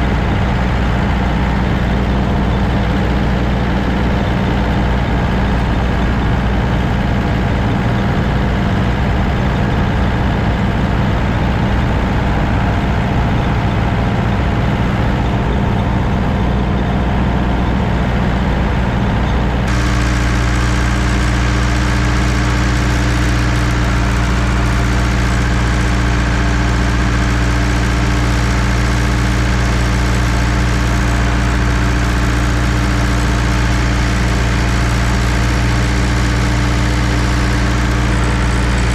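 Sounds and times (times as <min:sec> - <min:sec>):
engine running steadily: 0:00.0 - 0:38.9.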